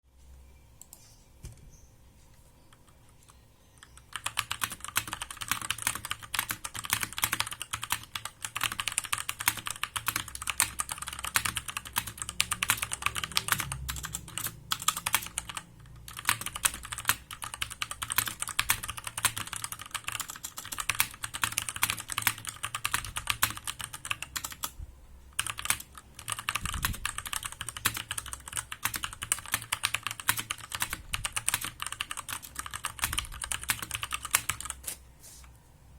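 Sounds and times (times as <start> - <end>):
mechanical keyboard typing: 2.7 - 24.8, 25.4 - 34.9.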